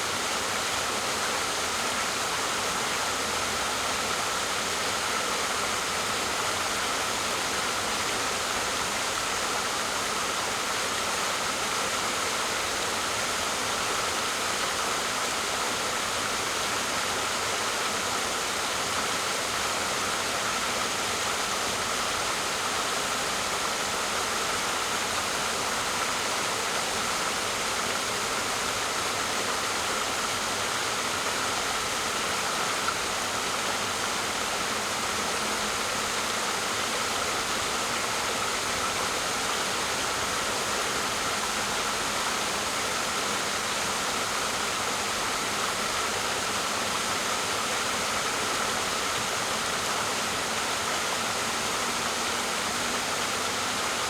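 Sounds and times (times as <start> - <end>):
waterfall rushing: 21.7 - 54.0.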